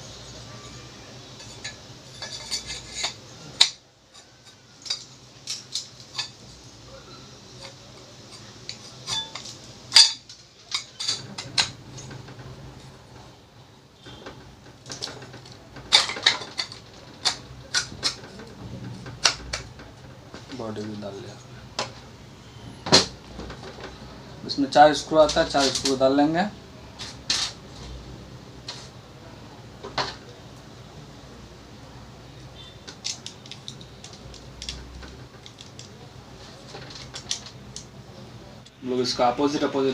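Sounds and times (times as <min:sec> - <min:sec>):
metal parts clinking: 0:01.4 - 0:06.6, 0:07.6 - 0:12.2, 0:14.9 - 0:18.5.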